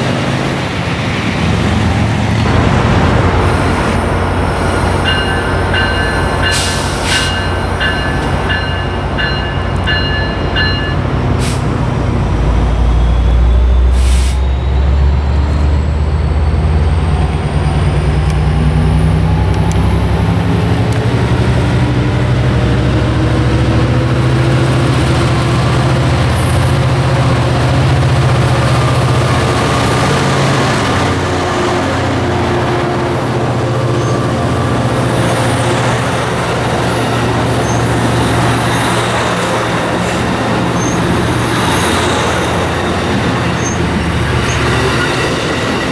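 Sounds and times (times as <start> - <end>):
diesel locomotive engine drone: 0.0 - 45.9
crossing bell ringing: 2.4 - 11.4.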